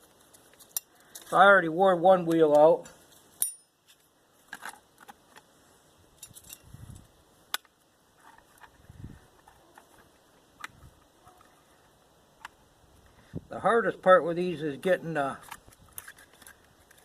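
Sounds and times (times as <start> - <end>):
metallic clicks of hand tools: 0.5 - 1.4.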